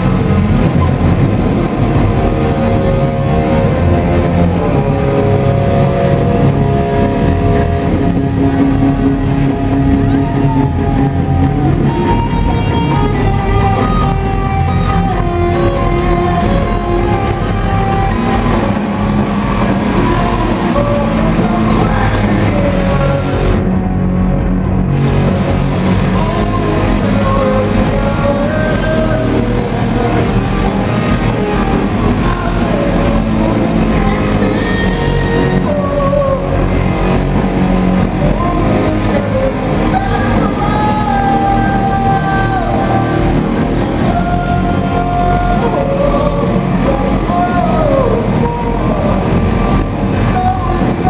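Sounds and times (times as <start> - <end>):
rock band playing live: 0.0 - 51.0
person singing: 9.7 - 23.9, 25.0 - 51.0.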